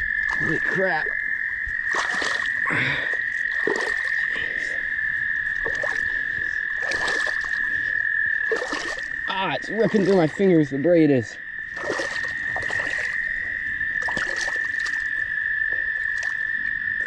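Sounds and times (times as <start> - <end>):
frogs trilling: 0.0 - 17.0.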